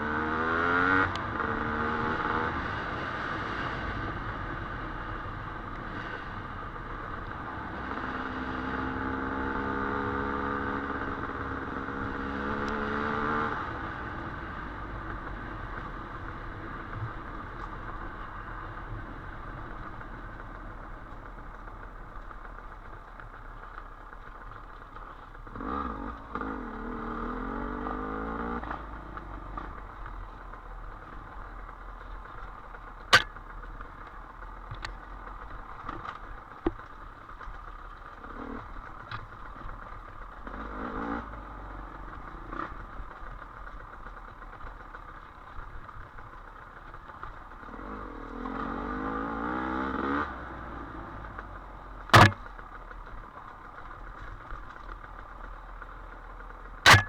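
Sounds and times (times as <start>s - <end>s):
sharp knocks: 33.1s - 33.3s, 52.2s - 52.4s
dirt bike engine revving: 52.1s - 52.4s.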